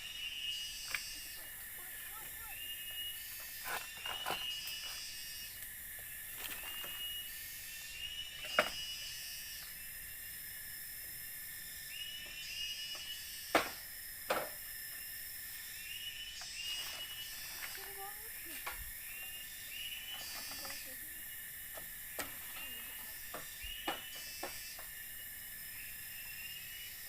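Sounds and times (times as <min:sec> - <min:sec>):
insect drone: 0:00.0 - 0:27.0
chirping animal call: 0:16.2 - 0:21.4.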